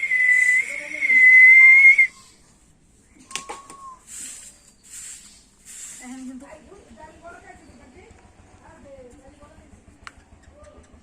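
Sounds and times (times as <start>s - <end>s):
loud steady whistle: 0.0s - 2.3s.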